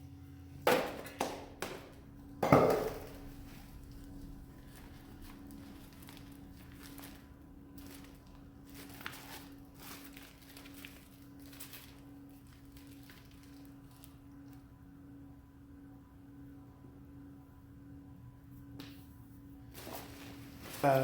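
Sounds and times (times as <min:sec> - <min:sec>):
steady low hum: 0:00.0 - 0:21.0
short rustles: 0:19.7 - 0:21.0.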